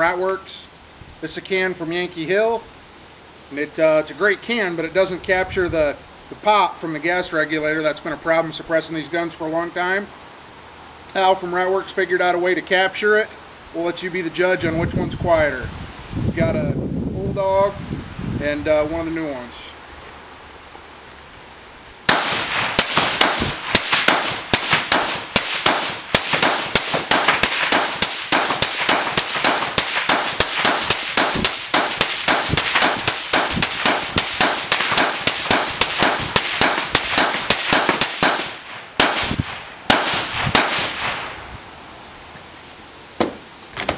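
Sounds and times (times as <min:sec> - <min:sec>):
suppressed rifle shots: 0:22.1 - 0:41.4.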